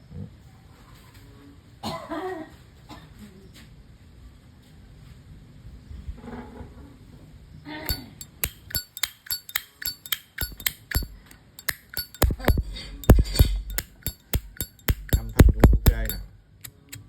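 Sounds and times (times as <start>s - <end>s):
lighter lid clinking open and shut: 7.9s - 16.2s.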